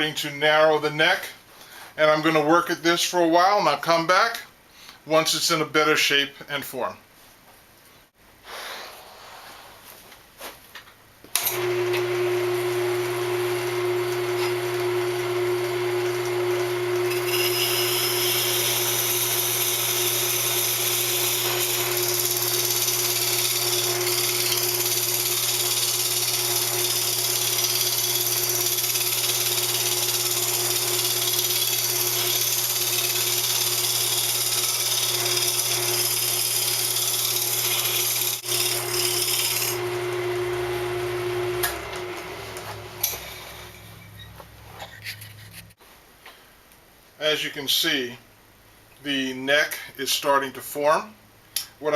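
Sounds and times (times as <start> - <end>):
lathe motor hum: 11.4 - 43.3
scraper cutting spinning wood: 16.5 - 40.0.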